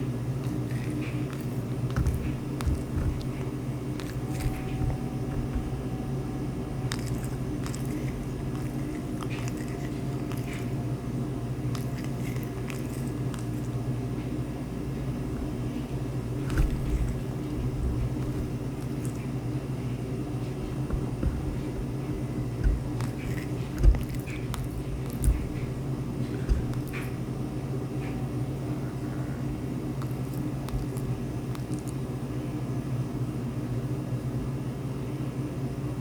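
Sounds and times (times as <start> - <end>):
steady low hum: 0.0 - 36.0
cat lapping water: 0.3 - 5.6, 6.8 - 13.9, 15.4 - 27.2.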